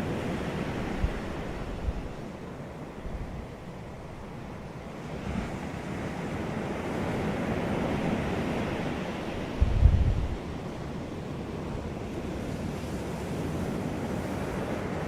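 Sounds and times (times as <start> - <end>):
wind buffeting microphone: 0.0 - 2.4, 5.0 - 11.0
ocean waves washing in: 0.0 - 15.0.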